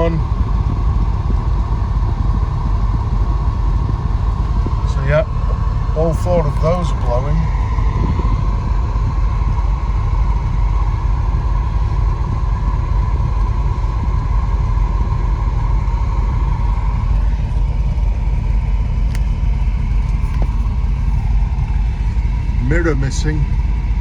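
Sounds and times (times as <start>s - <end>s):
car engine idling: 0.0s - 24.0s
heater blower fan: 0.0s - 24.0s
click: 19.1s - 19.4s.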